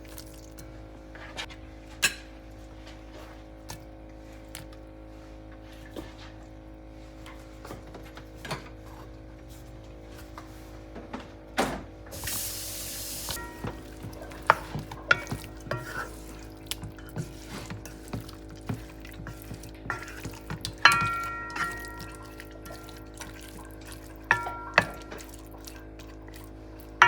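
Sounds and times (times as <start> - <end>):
steady low hum: 12.2 - 27.0
utensil knocking against pot: 16.8 - 22.2.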